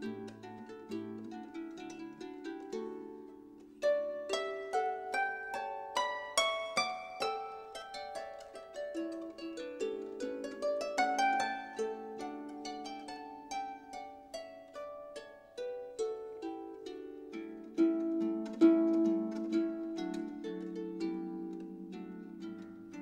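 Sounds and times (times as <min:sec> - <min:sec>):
plucked string melody: 0:00.0 - 0:23.0.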